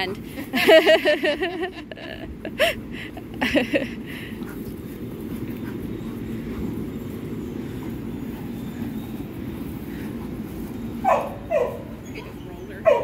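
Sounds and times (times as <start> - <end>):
steady low rumble: 0.0 - 13.0
dog yelping: 11.0 - 13.0.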